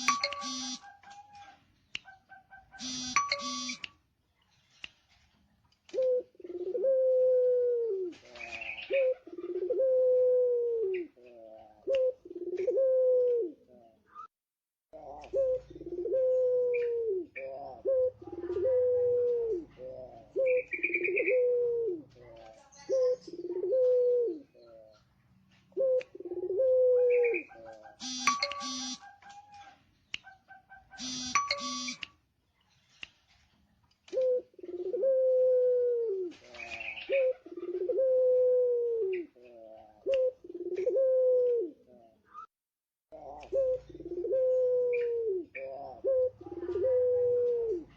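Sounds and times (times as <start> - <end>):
ringing electronic tone: 0.0 - 0.8, 2.8 - 3.8, 28.0 - 29.0, 31.0 - 32.0
dove cooing: 5.9 - 14.3, 15.0 - 31.9, 34.1 - 42.5, 43.2 - 47.9.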